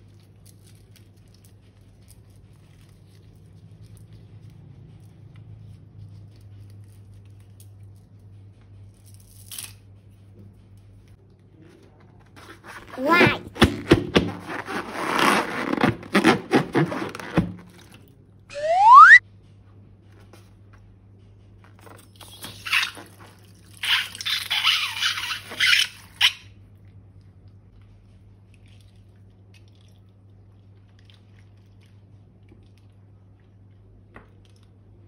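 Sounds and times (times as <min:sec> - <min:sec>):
loud rising squeak: 0:18.5 - 0:19.2.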